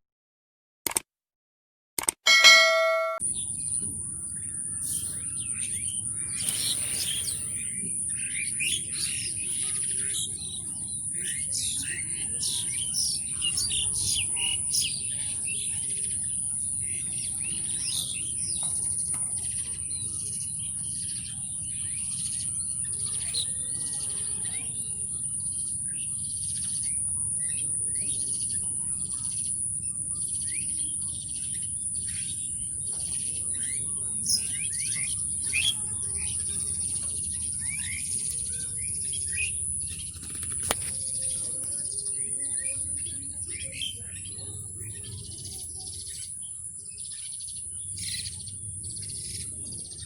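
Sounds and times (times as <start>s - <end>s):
high-pitched drone: 2.3s - 3.2s
small birds chirping: 2.6s - 50.0s.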